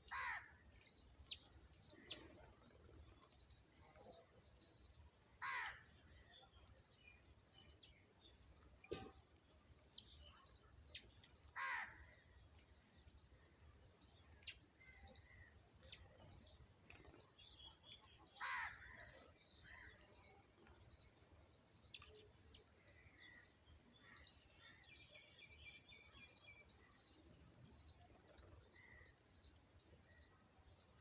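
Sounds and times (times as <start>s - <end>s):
harsh bird calls: 17.5s - 20.1s.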